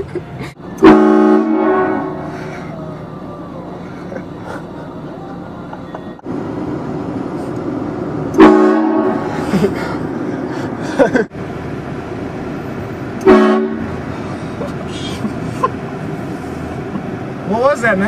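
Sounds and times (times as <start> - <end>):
air horn blasts: 0.7 - 2.5, 8.3 - 9.4, 13.2 - 14.0.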